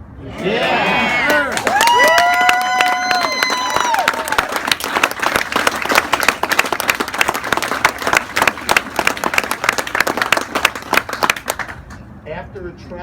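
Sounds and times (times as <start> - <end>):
crowd applauding: 0.4 - 12.0.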